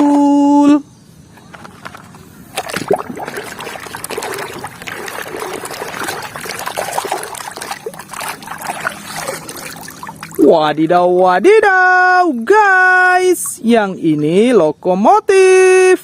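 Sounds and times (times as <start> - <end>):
water trickling and splashing: 2.5 - 15.0.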